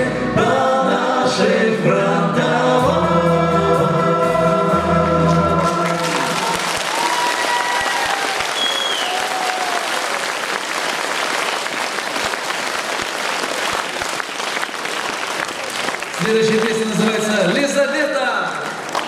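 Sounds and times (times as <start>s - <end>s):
audience applauding: 5.6s - 19.0s.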